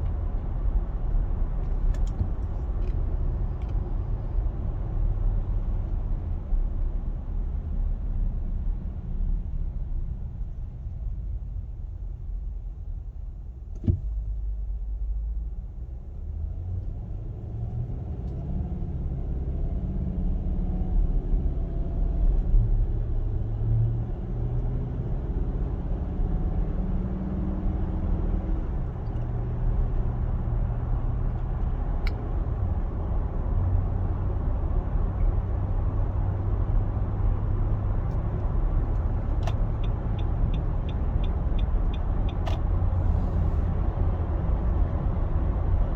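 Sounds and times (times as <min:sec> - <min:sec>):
car engine rumbling: 0:00.0 - 0:45.9
light ticks: 0:39.0 - 0:42.7.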